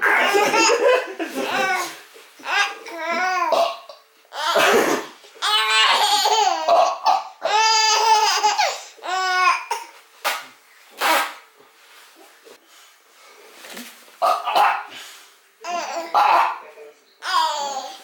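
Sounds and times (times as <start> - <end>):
baby laughing hysterically: 0.1 - 3.3, 5.4 - 9.2.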